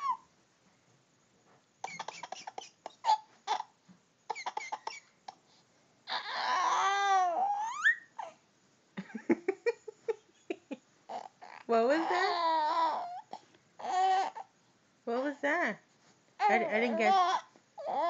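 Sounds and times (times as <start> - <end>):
baby squealing: 0.0 - 0.3, 1.8 - 3.7, 4.3 - 5.0, 6.1 - 8.4
baby babbling: 6.1 - 8.4, 11.1 - 14.5, 16.4 - 18.0.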